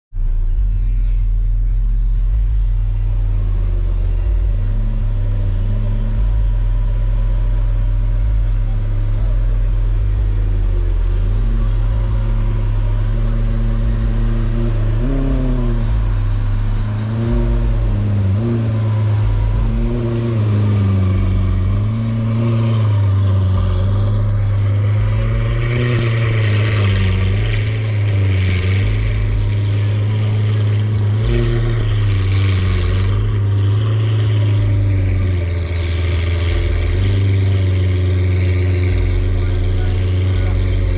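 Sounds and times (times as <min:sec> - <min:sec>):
car engine idling and revving: 0:00.1 - 0:40.9.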